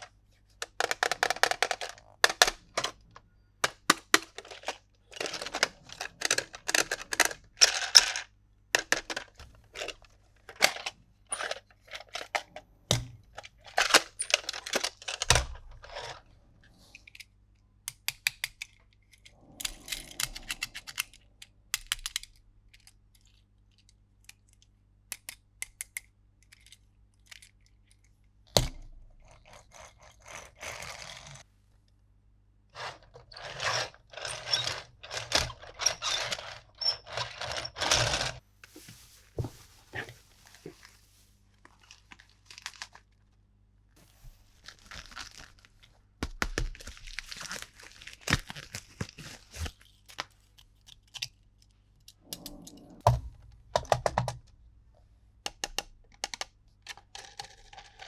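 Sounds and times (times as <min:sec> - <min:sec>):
plastic toy pieces clicking: 0:00.6 - 0:03.0, 0:03.6 - 0:12.3, 0:17.9 - 0:28.1
packaging crinkling: 0:38.6 - 0:43.4, 0:44.4 - 0:51.2.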